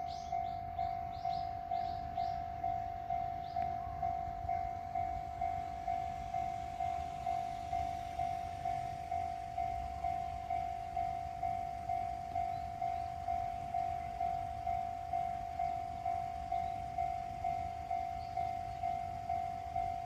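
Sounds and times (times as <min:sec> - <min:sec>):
level crossing warning bell: 0:00.0 - 0:20.0.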